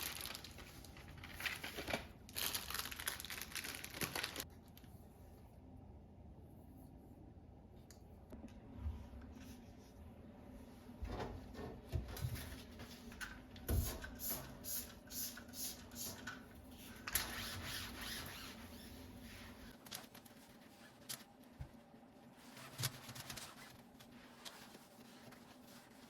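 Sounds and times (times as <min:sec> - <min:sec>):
rustling: 0:17.3 - 0:26.0
regular rubbing strokes: 0:23.8 - 0:26.0.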